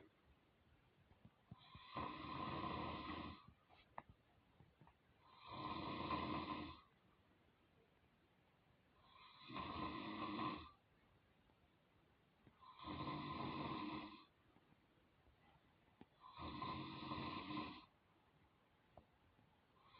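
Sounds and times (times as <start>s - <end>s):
person snoring: 1.6s - 3.5s, 5.3s - 6.8s, 9.1s - 10.8s, 12.6s - 14.3s, 16.2s - 17.9s.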